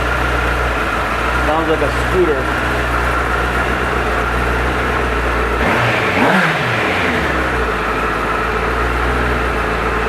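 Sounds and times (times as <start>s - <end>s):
motorcycle engine idling: 0.0s - 10.0s.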